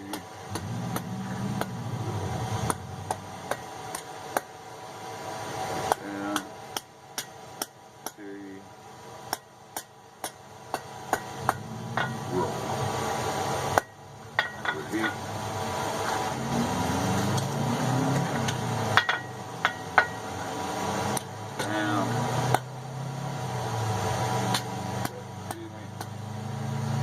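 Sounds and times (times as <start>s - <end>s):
hammer striking steel on anvil: 0.0s - 1.9s, 2.6s - 4.6s, 5.8s - 8.2s, 9.3s - 12.3s, 13.7s - 15.2s, 18.4s - 20.4s, 22.4s - 22.7s, 24.4s - 26.2s.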